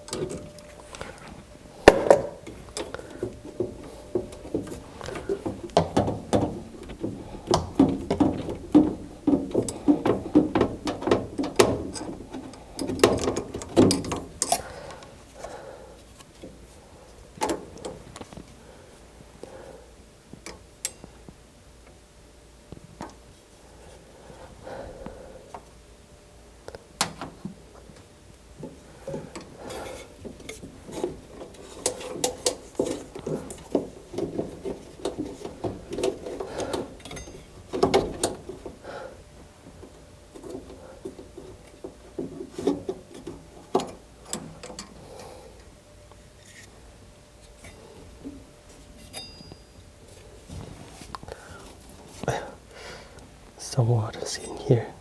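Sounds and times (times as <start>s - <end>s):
metal parts clicking and knocking: 1.8s - 15.1s, 29.0s - 38.8s
rubbing and scraping: 1.9s - 14.5s.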